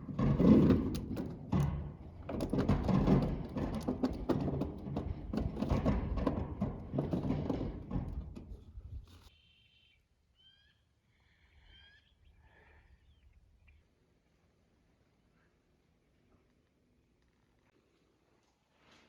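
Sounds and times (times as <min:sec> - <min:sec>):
loud rustling and clattering: 0:00.0 - 0:09.3.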